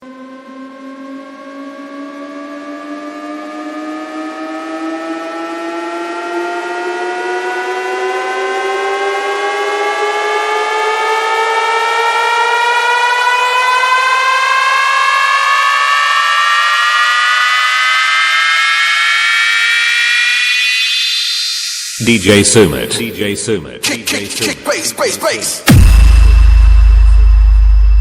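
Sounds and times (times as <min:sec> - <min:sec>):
buzzy electronic riser tone: 0:15.4 - 0:23.3.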